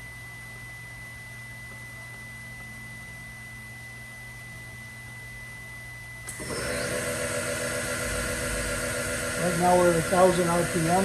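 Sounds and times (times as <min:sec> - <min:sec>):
lathe spindle whine: 0:06.2 - 0:11.0.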